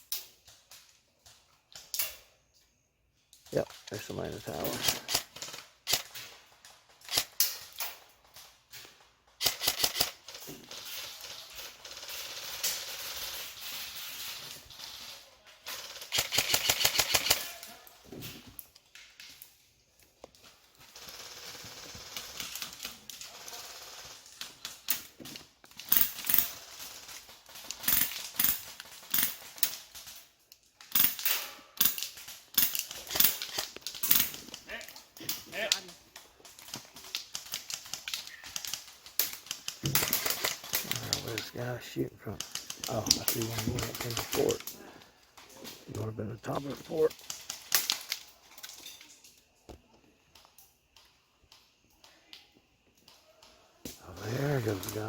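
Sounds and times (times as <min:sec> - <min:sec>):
airsoft guns firing: 0:09.4 - 0:17.6, 0:36.6 - 0:41.4.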